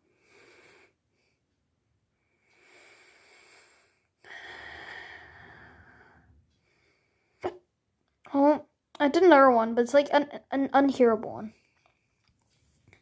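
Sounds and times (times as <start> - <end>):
person breathing: 0.0 - 1.5, 2.1 - 7.4.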